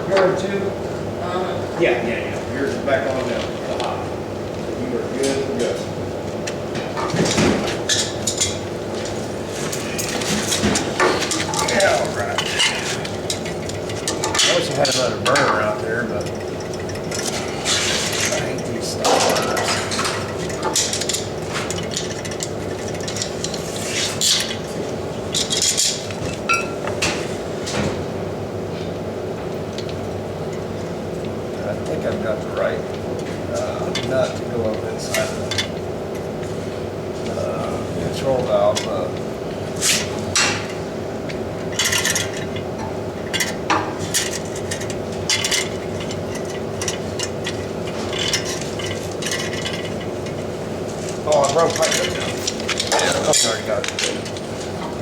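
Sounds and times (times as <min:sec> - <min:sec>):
steady background hum: 0:00.0 - 0:55.0
metal tools clinking and scraping: 0:07.0 - 0:24.6, 0:41.7 - 0:42.6, 0:43.3 - 0:54.8.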